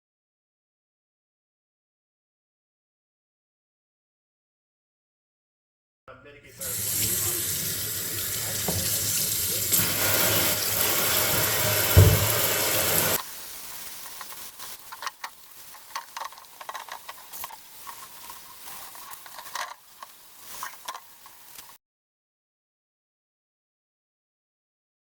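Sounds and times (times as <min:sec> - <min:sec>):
water running from a tap: 0:06.6 - 0:21.7
thump: 0:11.9 - 0:12.5.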